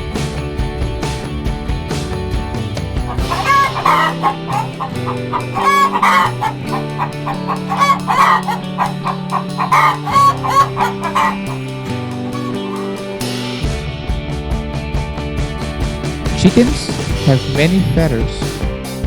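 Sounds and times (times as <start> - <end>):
light background music: 0.0 - 19.0
hens clucking: 2.6 - 13.5.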